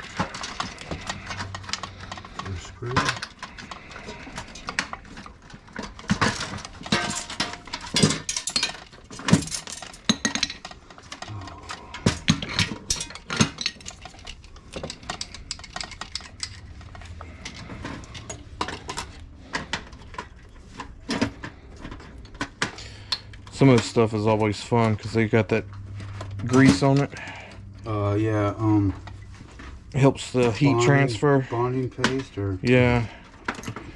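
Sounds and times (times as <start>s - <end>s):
metal parts and tools clinking: 0.0s - 25.2s.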